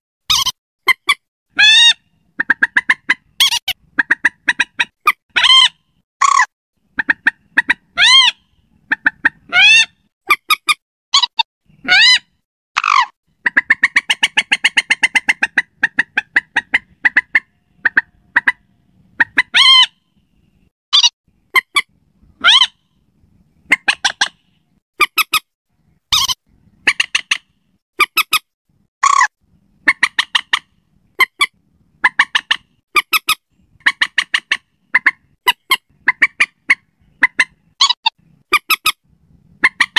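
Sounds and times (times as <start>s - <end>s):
rapid bird chattering: 0.3s - 12.2s, 12.8s - 20.0s, 29.0s - 39.0s
moorhen calls: 1.0s - 10.6s, 12.8s - 20.0s, 29.8s - 39.0s.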